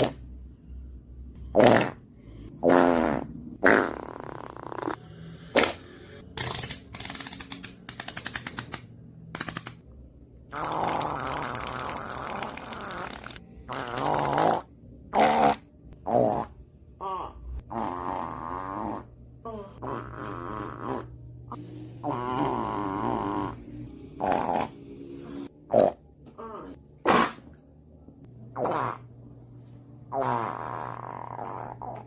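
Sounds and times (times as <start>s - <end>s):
farts: 1.5s - 2.0s, 2.6s - 5.0s, 10.6s - 16.5s, 22.0s - 23.6s, 27.0s - 27.4s, 30.1s - 32.0s.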